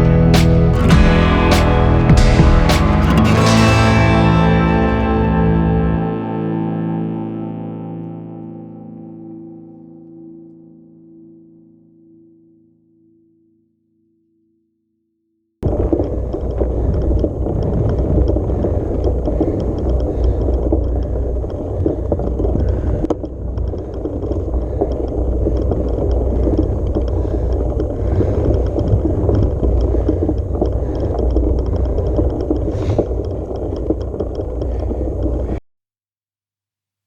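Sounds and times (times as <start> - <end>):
off-road vehicle rumbling: 0.0 - 6.0.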